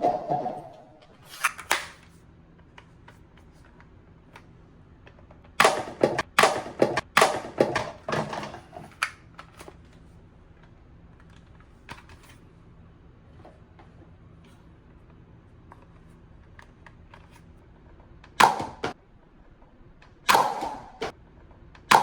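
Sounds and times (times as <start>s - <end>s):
sharp clicks and knocks: 5.1s - 9.7s.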